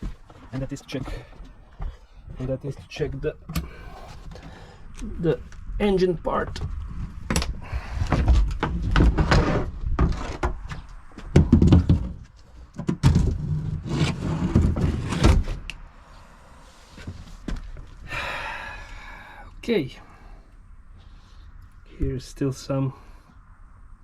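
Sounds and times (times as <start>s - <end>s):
knocks thuds and scraping clatter: 6.5s - 15.7s.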